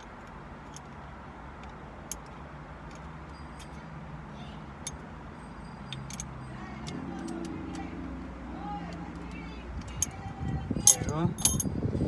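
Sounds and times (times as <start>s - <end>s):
metal parts and tools clicking: 1.6s - 3.8s, 5.9s - 7.8s, 10.8s - 11.7s.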